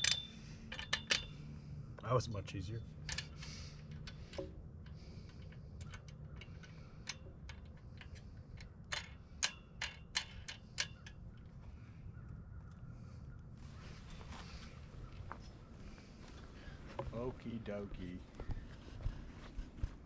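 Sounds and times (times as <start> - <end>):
clicks and taps of parts fitting: 0.0 - 1.4
low steady hum: 0.0 - 20.0.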